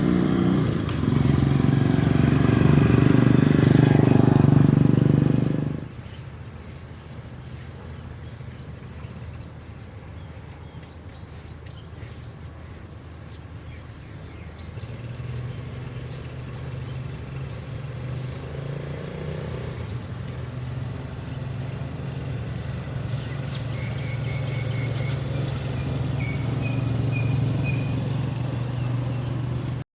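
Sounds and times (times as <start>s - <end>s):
vehicle engine droning: 0.0s - 6.0s, 11.3s - 29.8s
bird chirping: 5.2s - 18.6s, 22.8s - 29.7s.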